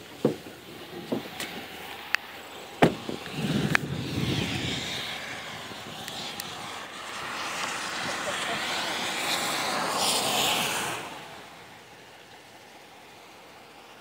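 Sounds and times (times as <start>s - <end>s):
steady rushing noise: 0.0s - 14.0s
low rumble: 2.6s - 7.4s
truck door knocks and clunks: 2.8s - 3.2s.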